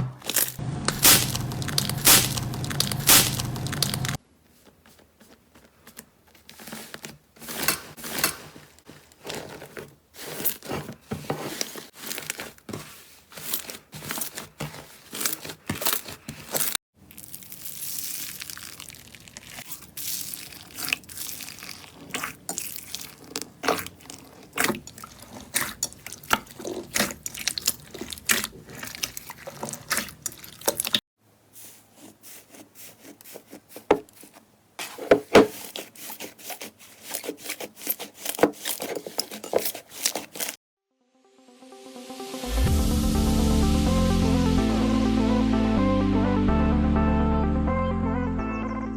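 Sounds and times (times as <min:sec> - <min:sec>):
slime squeezed wet crackles: 0:00.3 - 0:04.2, 0:17.1 - 0:31.0.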